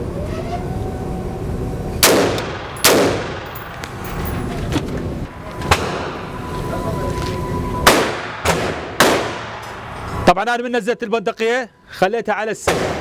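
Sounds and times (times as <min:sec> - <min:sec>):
rifle shots with echo: 0:02.0 - 0:03.6, 0:07.9 - 0:09.6.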